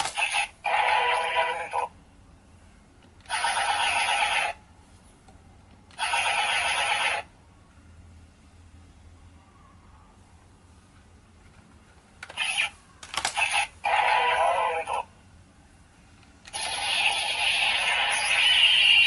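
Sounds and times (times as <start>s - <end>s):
toy electronic sound effect: 0.0s - 1.9s, 3.2s - 4.6s, 5.9s - 7.3s, 12.3s - 15.1s, 16.5s - 19.0s.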